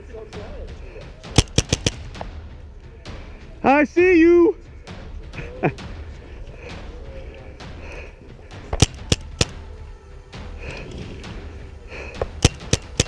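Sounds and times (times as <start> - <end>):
paintball marker shots: 1.4 - 2.3, 8.7 - 9.6, 12.2 - 13.0.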